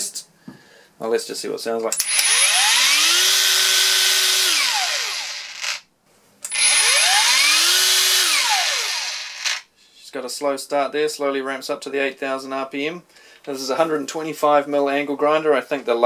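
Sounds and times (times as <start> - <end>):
angle grinder motor whine: 2.0 - 5.8, 6.5 - 9.6.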